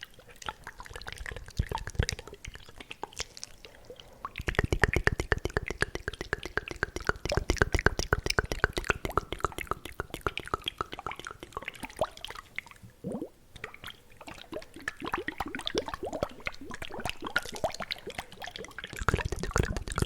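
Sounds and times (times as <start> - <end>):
wet tongue clicks and smacks: 0.0 - 12.7, 14.8 - 20.0.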